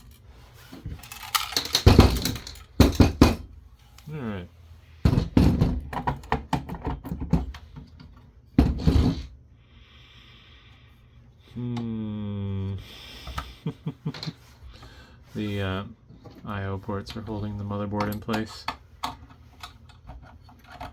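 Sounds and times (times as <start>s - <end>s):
metal tools clattering on chassis: 0.9s - 3.4s.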